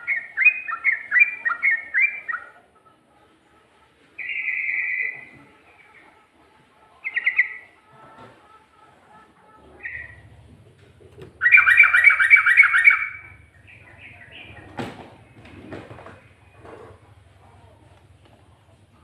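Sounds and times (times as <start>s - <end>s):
bird singing: 0.0s - 3.5s, 4.2s - 6.3s, 6.9s - 7.9s, 9.1s - 10.6s, 11.2s - 17.7s.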